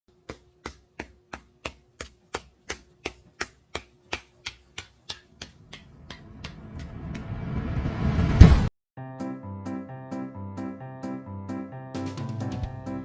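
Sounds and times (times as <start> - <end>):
rising whoosh: 6.2 - 8.7.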